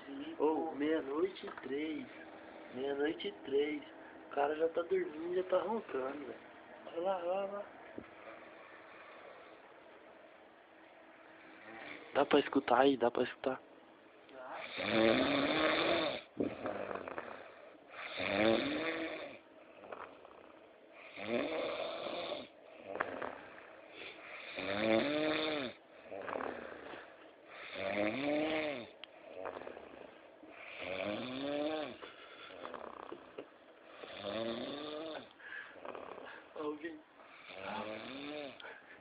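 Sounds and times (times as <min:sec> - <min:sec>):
man snoring: 0:11.4 - 0:12.5, 0:14.4 - 0:38.8.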